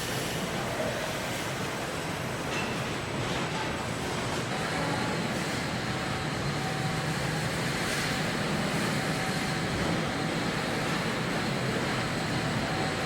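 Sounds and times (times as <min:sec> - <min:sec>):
machinery hiss: 0:00.0 - 0:02.5
machinery hum and whine: 0:00.0 - 0:13.0.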